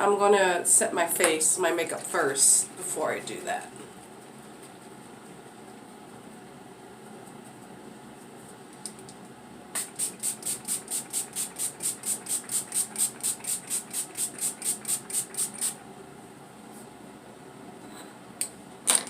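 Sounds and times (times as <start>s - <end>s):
spray bottle spritzing: 9.8s - 15.8s.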